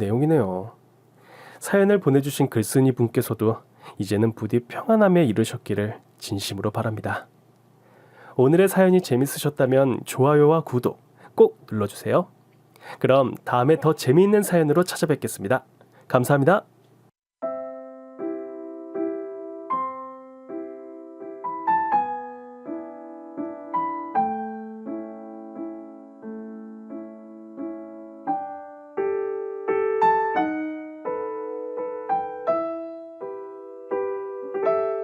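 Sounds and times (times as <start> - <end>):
soft piano chords: 17.4 - 35.0.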